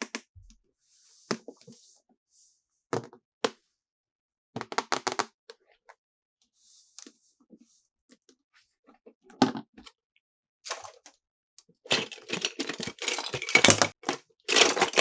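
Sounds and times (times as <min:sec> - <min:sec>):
plastic packaging crinkling: 0:11.9 - 0:15.0
plastic toy pieces clicking: 0:11.9 - 0:15.0.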